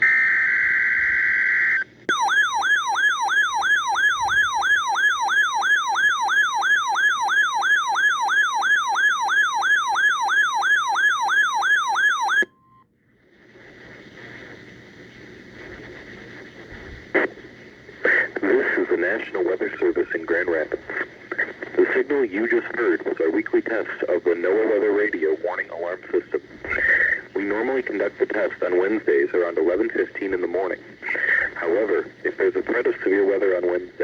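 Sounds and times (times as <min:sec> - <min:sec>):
electronic alarm sweeping down: 0:02.1 - 0:12.6
faint radio hiss: 0:12.9 - 0:34.0.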